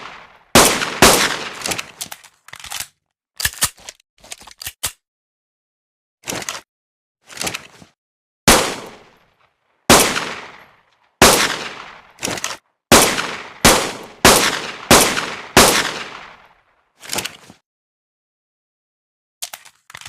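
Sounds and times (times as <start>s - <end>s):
pistol gunshots with echo: 0.0s - 1.9s, 8.5s - 9.2s, 9.9s - 12.2s, 12.9s - 16.6s.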